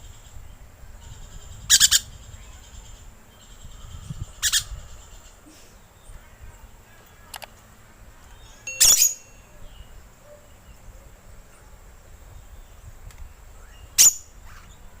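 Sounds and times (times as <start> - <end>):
lorikeet screeching: 3.6 - 5.2.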